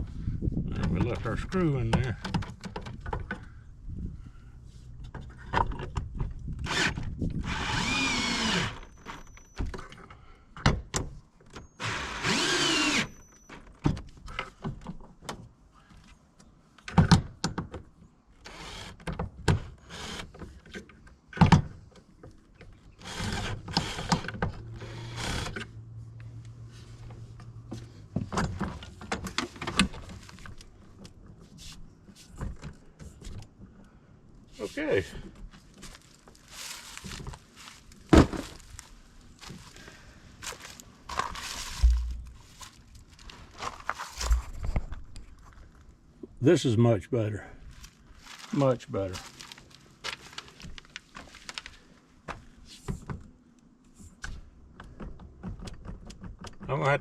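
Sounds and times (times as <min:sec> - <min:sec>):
power drill driving screws: 0:06.6 - 0:09.4, 0:11.8 - 0:13.3, 0:18.4 - 0:19.0, 0:19.8 - 0:20.3, 0:23.0 - 0:25.7
sharp knocks: 0:41.8 - 0:42.4.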